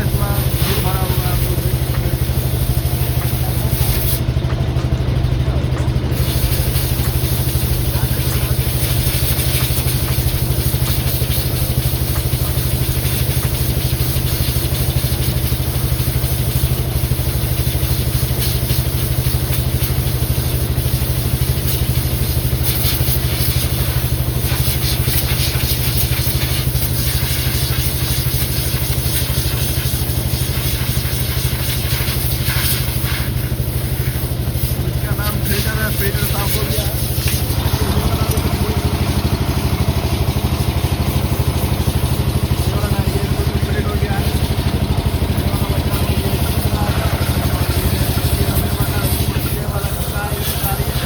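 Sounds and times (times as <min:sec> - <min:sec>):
engine running steadily: 0:00.0 - 0:51.0.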